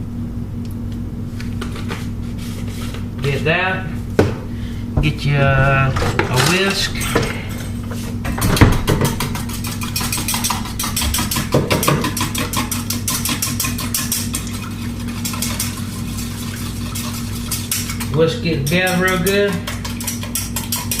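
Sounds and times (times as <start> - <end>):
steady low hum: 0.0 - 21.0
wire whisk beating eggs in a bowl: 8.8 - 21.0.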